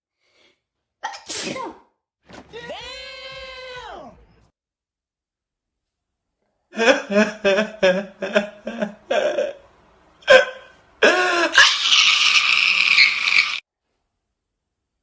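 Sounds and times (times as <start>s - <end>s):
woman sneezing: 1.0s - 1.9s.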